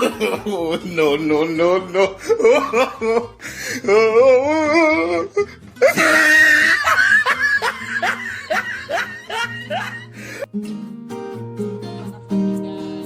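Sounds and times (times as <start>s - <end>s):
music: 0.0s - 13.0s
wavering laughing voice: 1.8s - 10.4s
plucked notes: 7.1s - 13.0s.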